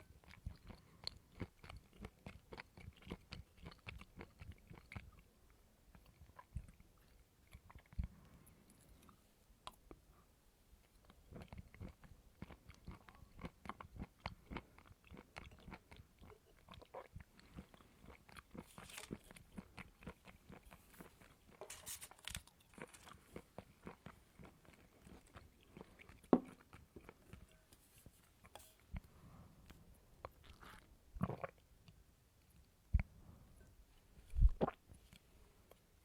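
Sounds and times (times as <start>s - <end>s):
chewing crunchy coconut: 0.0s - 5.3s, 11.0s - 27.5s.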